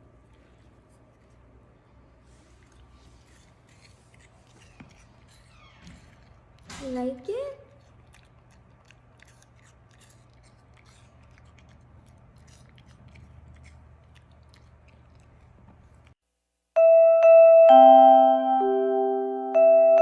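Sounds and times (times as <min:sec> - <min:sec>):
dog chewing: 0:00.1 - 0:16.2
chiming tune of mallet notes: 0:16.8 - 0:20.0.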